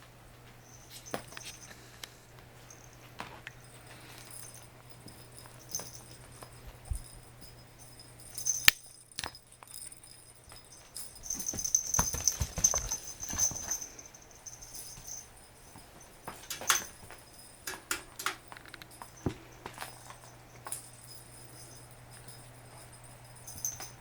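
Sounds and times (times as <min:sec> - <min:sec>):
high jingling: 0:00.6 - 0:24.0
cat toy clicking and rattling: 0:10.8 - 0:14.0, 0:16.3 - 0:21.2.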